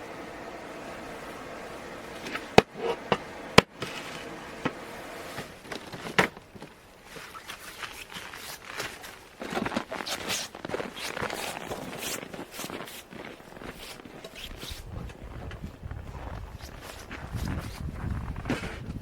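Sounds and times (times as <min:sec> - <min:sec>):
small ticks and rustling: 0:05.6 - 0:19.0.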